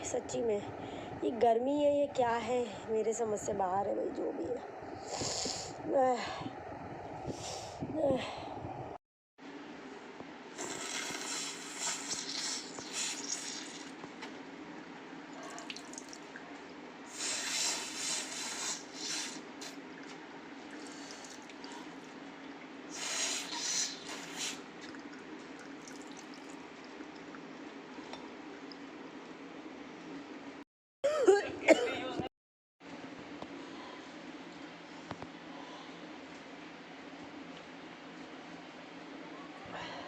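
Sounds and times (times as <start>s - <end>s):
steady low hum: 0.0s - 31.9s
person blowing nose and sniffling: 10.6s - 13.8s, 17.1s - 19.4s, 22.9s - 24.6s.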